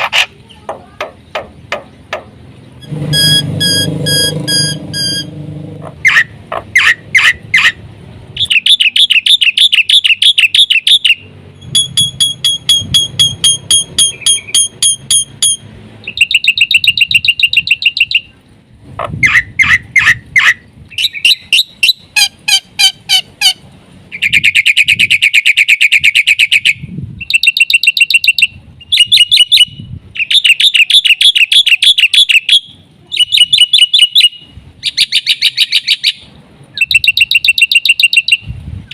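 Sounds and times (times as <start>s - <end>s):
myna singing trills and whistles: 24.2s - 36.2s.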